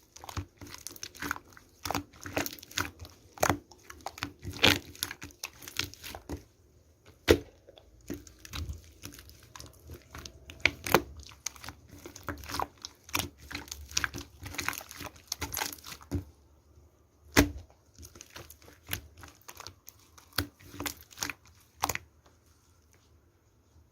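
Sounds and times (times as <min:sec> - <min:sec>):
paper or plastic crinkling: 0:08.0 - 0:16.4, 0:17.9 - 0:23.8.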